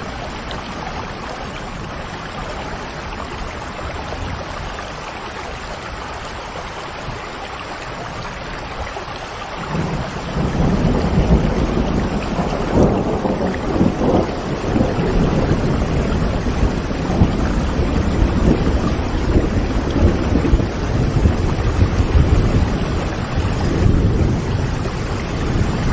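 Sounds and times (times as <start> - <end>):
rain falling: 0.0 - 25.9
rolling thunder: 9.6 - 25.9.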